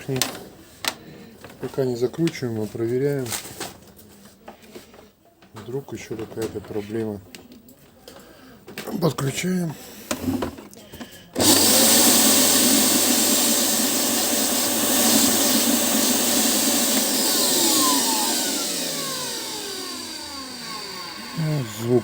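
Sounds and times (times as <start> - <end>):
motor winding down whine: 11.4 - 22.0
vacuum cleaner motor running: 11.4 - 22.0.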